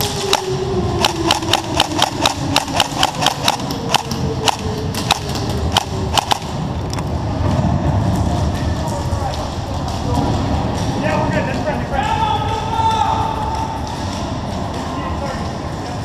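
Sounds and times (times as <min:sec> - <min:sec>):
airsoft guns firing: 0:00.0 - 0:06.6.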